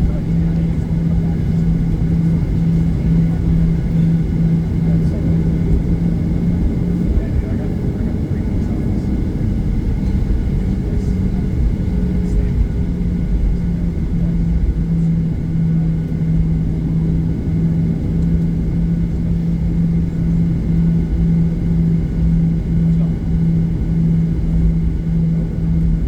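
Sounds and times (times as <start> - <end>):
jet engines running at taxi power: 0.0 - 26.0
steady low hum: 0.0 - 26.0
steady low rumble: 0.0 - 26.0.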